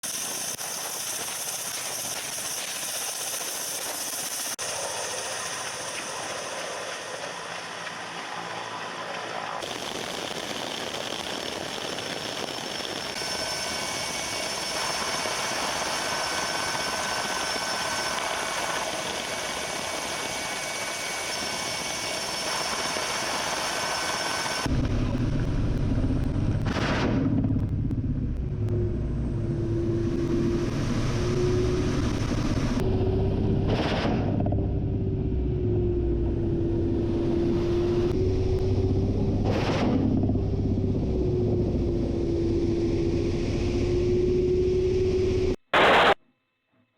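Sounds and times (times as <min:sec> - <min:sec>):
helicopter turbine engines and rotors: 0:00.0 - 0:46.2.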